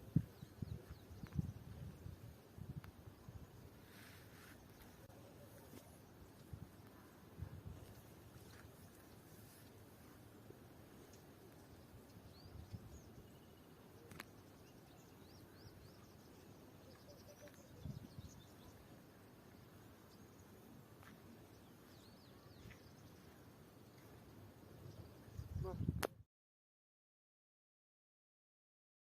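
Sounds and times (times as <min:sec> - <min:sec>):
faint bird chirps: 0:11.0 - 0:19.0.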